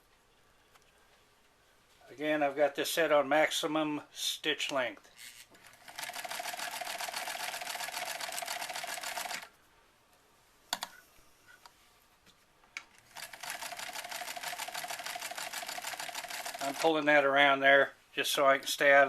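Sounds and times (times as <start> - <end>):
sewing machine sewing: 5.6 - 9.5, 13.1 - 17.0.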